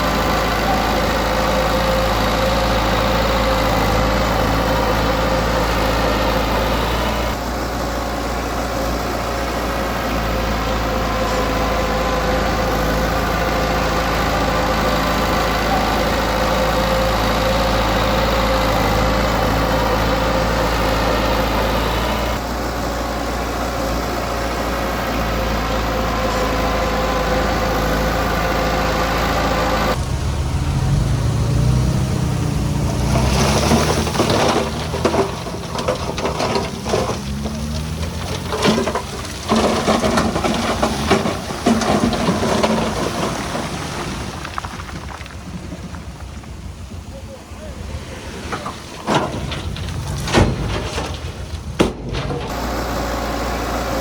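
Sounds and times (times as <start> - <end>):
diesel engine running: 0.0 - 54.0
engine working under load: 0.0 - 54.0
stone and dirt clattering: 32.7 - 46.8, 48.3 - 53.1.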